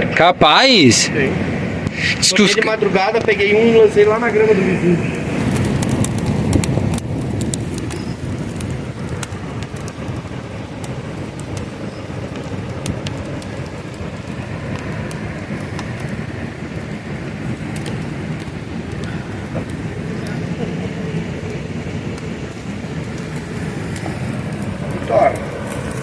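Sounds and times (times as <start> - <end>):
river rapids rushing: 1.9 - 3.0.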